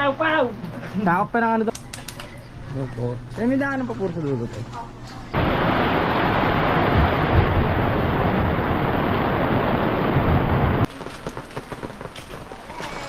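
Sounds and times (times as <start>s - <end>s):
heavy rain pouring: 5.4s - 13.0s
rain pattering: 5.4s - 13.0s.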